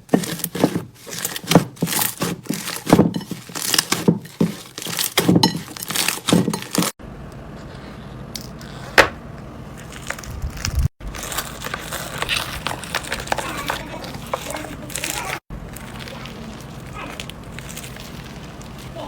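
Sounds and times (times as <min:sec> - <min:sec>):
crunchy slime crackling and popping: 0:09.8 - 0:19.0.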